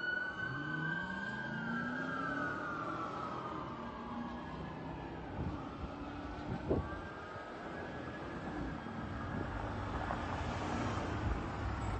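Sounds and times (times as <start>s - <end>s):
fire engine siren: 0.0s - 11.9s
street traffic noise: 0.0s - 11.9s.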